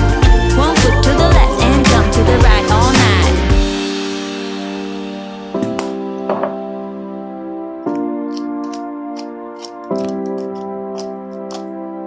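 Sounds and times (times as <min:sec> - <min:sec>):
light ticking beat: 0:00.0 - 0:04.2
sustained keyboard chords: 0:00.0 - 0:12.0.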